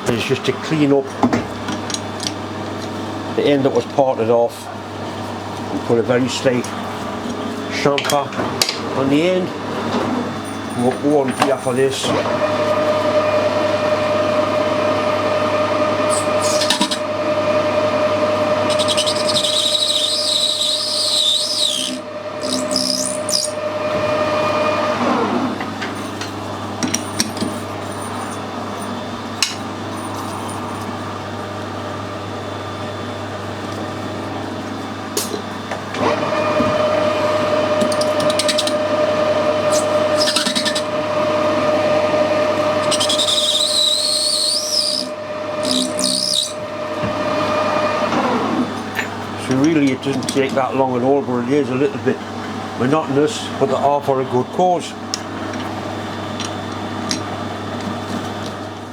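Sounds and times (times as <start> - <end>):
metal lathe whining: 9.0 - 31.2, 35.9 - 52.2
high squeal of cutting: 16.1 - 17.1, 18.6 - 23.8, 39.7 - 40.9, 42.8 - 46.7.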